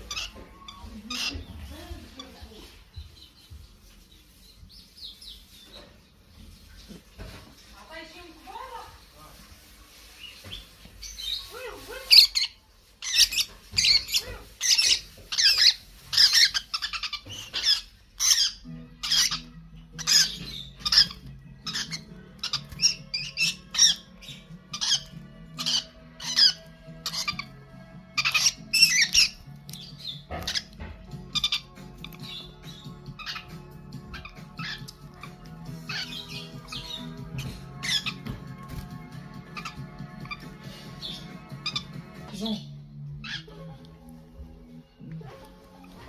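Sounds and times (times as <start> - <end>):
young birds squawking: 0.0 - 3.3, 10.3 - 43.6
background music with low notes: 0.0 - 46.0.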